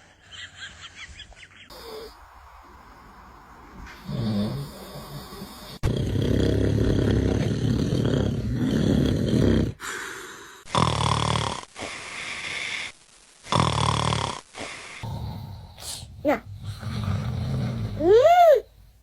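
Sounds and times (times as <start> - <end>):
man snoring: 4.0 - 12.9, 13.5 - 18.6.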